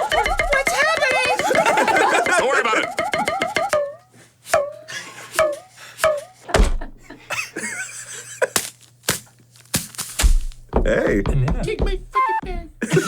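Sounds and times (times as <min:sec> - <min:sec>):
heavy thump: 0:06.5 - 0:07.0, 0:09.1 - 0:12.7
sharp knocks and clicks: 0:10.1 - 0:12.2.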